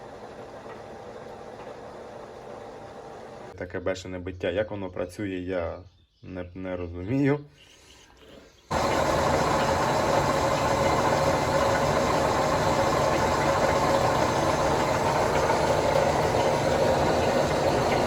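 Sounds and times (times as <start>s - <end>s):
machine running steadily: 0.0s - 3.5s, 8.7s - 18.0s.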